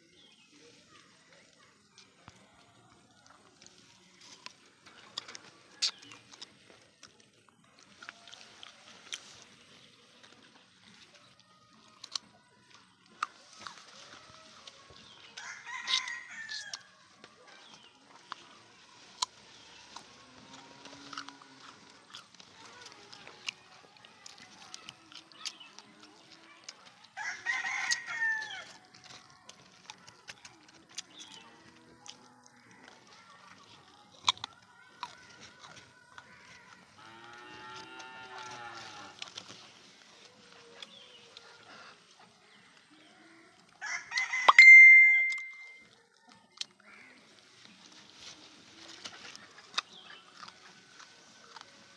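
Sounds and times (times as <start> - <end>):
cow mooing: 37.0 - 39.2
rooster crowing: 43.8 - 45.6.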